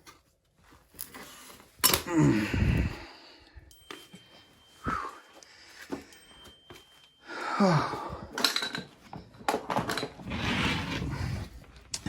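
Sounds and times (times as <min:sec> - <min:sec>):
metal tools clinking: 0:00.8 - 0:10.3
person grunting: 0:02.0 - 0:03.2, 0:07.6 - 0:08.3.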